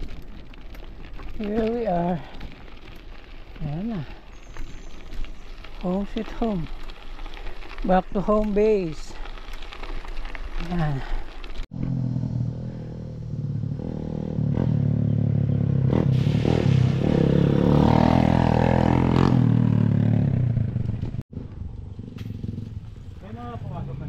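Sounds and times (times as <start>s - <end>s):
motorcycle engine passing: 11.7s - 24.0s.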